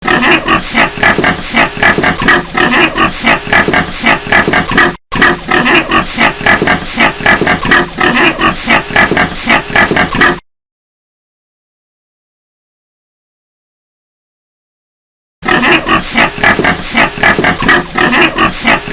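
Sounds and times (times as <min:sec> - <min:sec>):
pigs calling: 0:00.0 - 0:10.4, 0:15.4 - 0:18.9.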